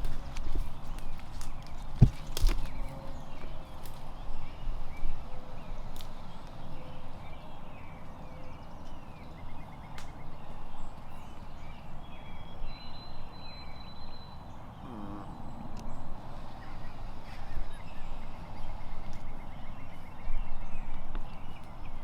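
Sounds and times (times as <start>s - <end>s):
songbirds chirping: 0.0s - 22.0s
low-pitched bird call: 14.7s - 15.8s.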